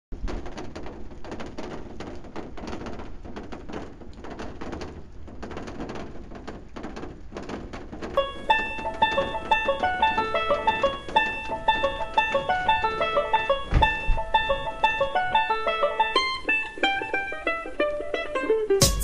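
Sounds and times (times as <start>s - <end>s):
rustling and clicking: 0.1s - 18.6s
plucked string music: 8.2s - 19.0s.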